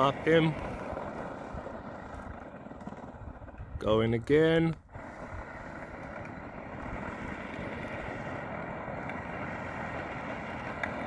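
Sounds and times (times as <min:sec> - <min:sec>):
tyre noise: 0:00.0 - 0:11.0.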